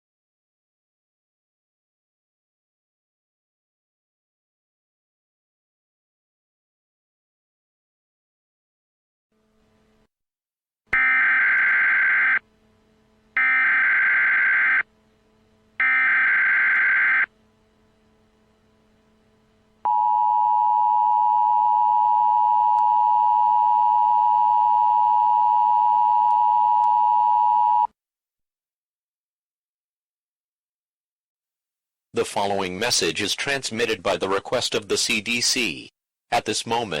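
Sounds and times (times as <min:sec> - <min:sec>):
buzzing data tones: 0:11.0 - 0:21.0.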